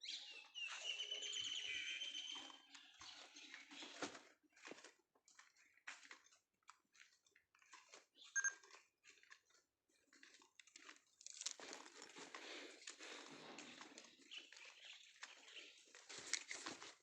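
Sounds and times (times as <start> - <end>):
footsteps crunching on gritty surface: 10.0 - 17.0.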